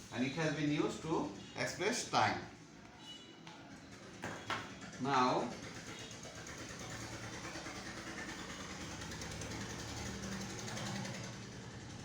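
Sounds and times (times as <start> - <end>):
low engine-like hum: 3.8 - 12.0.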